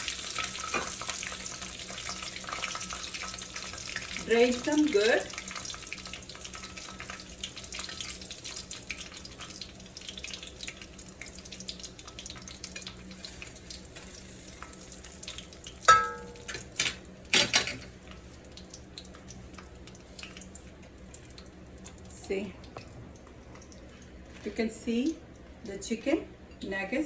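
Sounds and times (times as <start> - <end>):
hot oil sizzling: 0.0 - 25.1.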